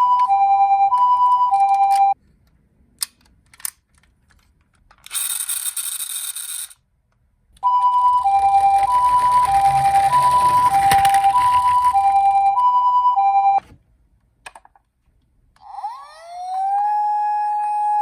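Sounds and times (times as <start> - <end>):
two-tone toy ambulance siren: 0.0 - 2.2, 7.6 - 13.6, 15.6 - 18.0
rattling noise: 8.2 - 12.3.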